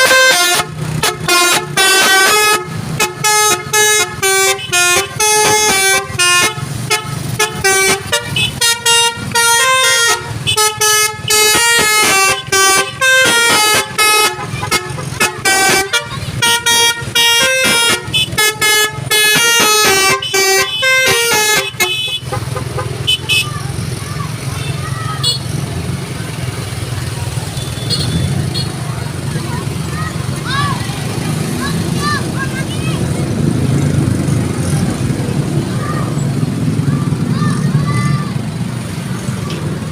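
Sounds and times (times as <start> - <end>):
multi-tone vehicle horn tune: 0.0 - 23.8, 24.6 - 25.6, 27.4 - 28.9.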